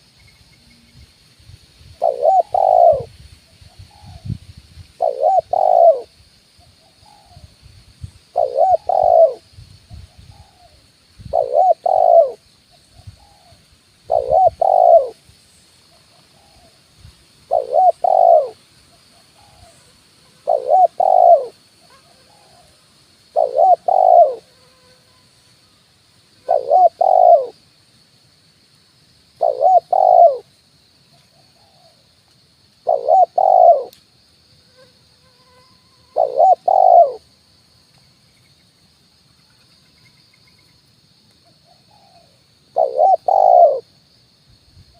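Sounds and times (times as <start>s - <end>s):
dove cooing: 2.0s - 3.1s, 5.0s - 6.1s, 8.3s - 9.4s, 10.4s - 12.4s, 14.1s - 15.2s, 17.5s - 18.6s, 20.4s - 22.7s, 23.4s - 24.5s, 26.4s - 27.6s, 29.4s - 30.5s, 32.8s - 33.9s, 36.1s - 37.2s, 41.8s - 43.9s.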